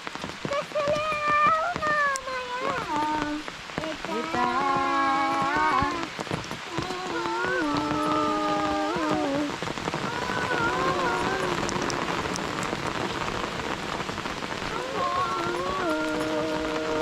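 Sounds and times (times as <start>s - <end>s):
steady rain falling: 0.0s - 17.0s
person singing held notes: 2.6s - 6.1s, 6.7s - 12.2s, 14.7s - 17.0s.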